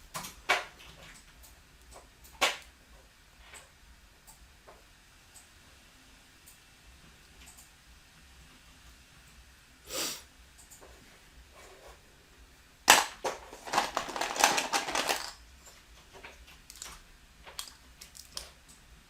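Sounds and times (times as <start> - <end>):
plastic bricks clattering: 12.9 - 15.4.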